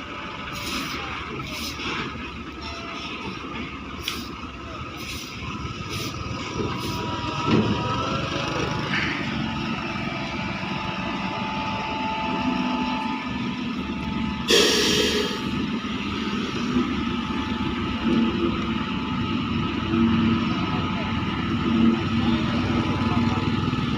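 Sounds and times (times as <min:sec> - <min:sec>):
diesel engine running: 0:00.0 - 0:23.9
air brake hiss: 0:00.6 - 0:01.9, 0:04.0 - 0:04.3, 0:05.0 - 0:06.2, 0:14.5 - 0:15.5.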